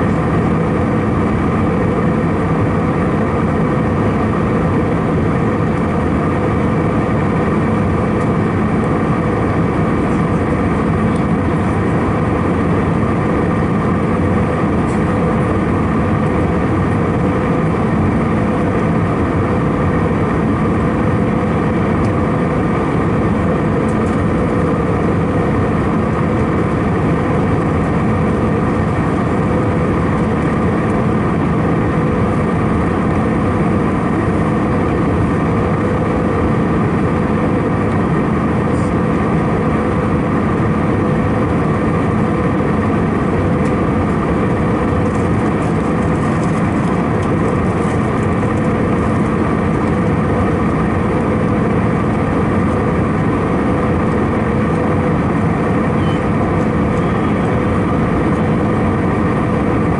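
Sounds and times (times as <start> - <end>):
airplane cabin engine roar: 0.0 - 59.9.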